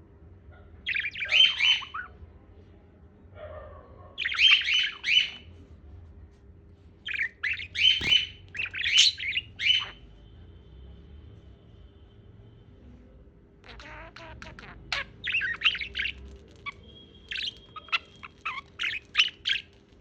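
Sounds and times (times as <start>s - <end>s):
parrot chirping and squawking: 0.8s - 2.2s, 4.2s - 5.5s, 7.0s - 10.1s, 13.6s - 19.8s.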